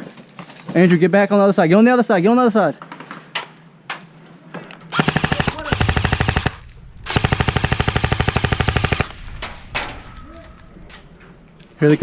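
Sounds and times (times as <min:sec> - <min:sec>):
airsoft rifle automatic bursts: 0:04.9 - 0:09.2.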